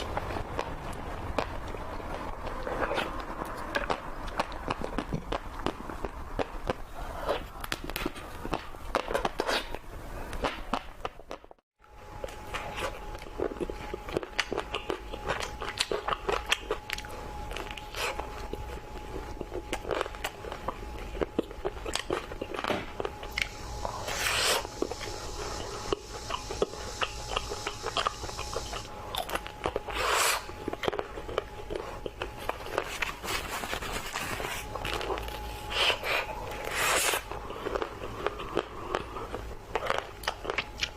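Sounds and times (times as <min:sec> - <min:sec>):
person eating ice cream: 0:00.0 - 0:10.8, 0:12.2 - 0:33.4, 0:34.4 - 0:40.9.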